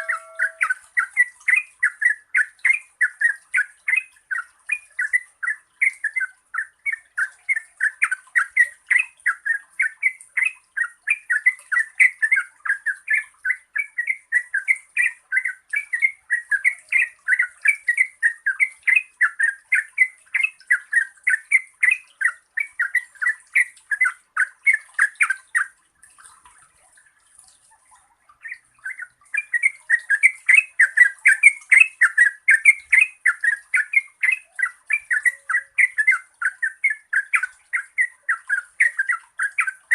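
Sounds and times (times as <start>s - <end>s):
bulbul singing chattering notes: 0.0s - 1.6s.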